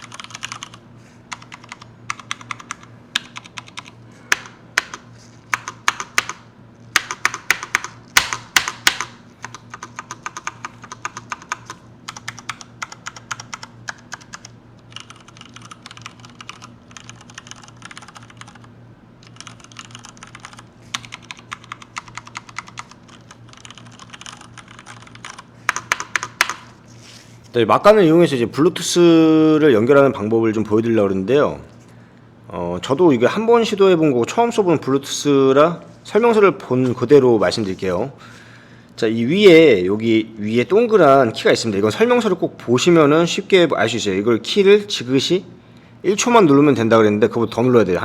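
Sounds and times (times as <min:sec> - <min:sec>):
mechanical keyboard typing: 0:00.0 - 0:06.4, 0:07.0 - 0:18.7, 0:19.3 - 0:26.7.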